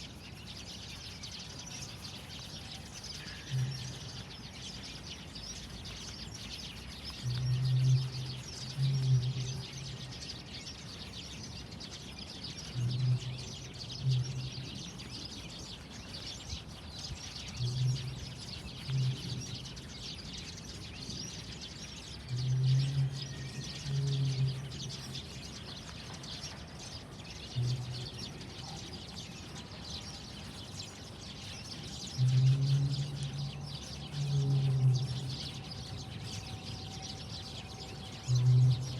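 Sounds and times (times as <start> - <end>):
high chirping birds: 0.0 - 38.9.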